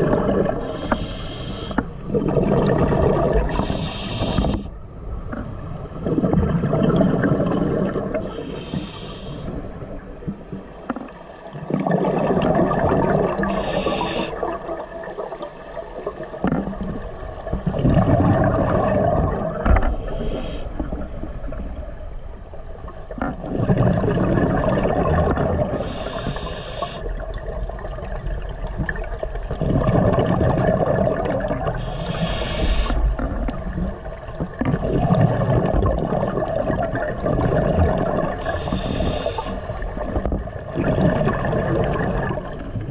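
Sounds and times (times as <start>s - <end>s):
exhaled bubbles rushing: 0.0s - 0.8s, 2.0s - 4.6s, 5.9s - 8.4s, 9.8s - 15.1s, 16.1s - 21.9s, 22.8s - 25.9s, 27.0s - 42.9s
regulator inhale hiss: 0.6s - 2.0s, 3.5s - 4.8s, 8.2s - 9.8s, 13.4s - 16.4s, 19.9s - 21.0s, 25.7s - 27.1s, 31.8s - 33.2s, 38.4s - 40.0s.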